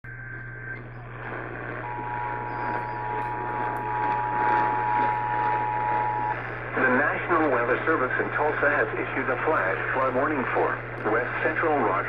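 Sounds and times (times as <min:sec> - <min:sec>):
low hum: 0:00.1 - 0:12.0
radio static hiss: 0:00.1 - 0:12.0.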